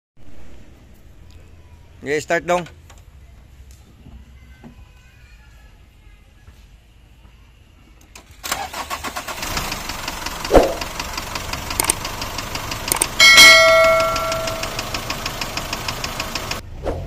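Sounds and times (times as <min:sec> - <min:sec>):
diesel engine clattering: 0:08.4 - 0:16.7
metallic ringing tone: 0:13.2 - 0:14.9.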